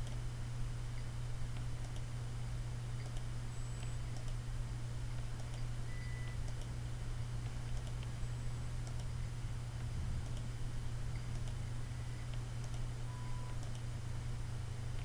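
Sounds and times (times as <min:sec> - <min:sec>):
steady low hum: 0:00.0 - 0:15.0
mid-pitched beep: 0:05.9 - 0:06.4, 0:13.1 - 0:13.6
high test tone beeps: 0:13.1 - 0:13.6.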